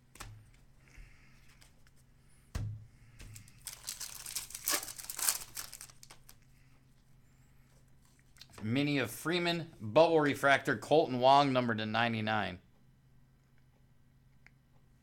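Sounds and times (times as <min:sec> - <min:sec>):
foil wrapper crinkling: 0:03.2 - 0:06.5.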